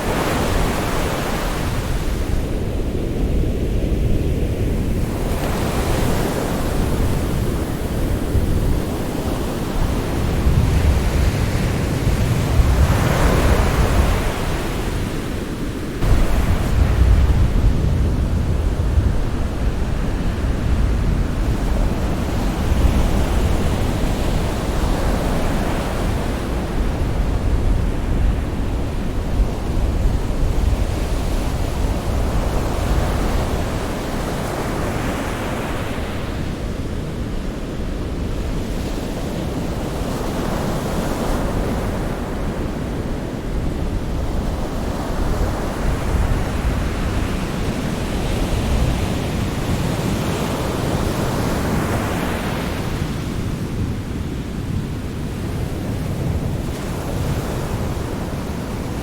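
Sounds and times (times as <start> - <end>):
waves breaking on shore: 0.0 - 59.0
deep surf rumble: 1.9 - 15.2, 15.8 - 33.6.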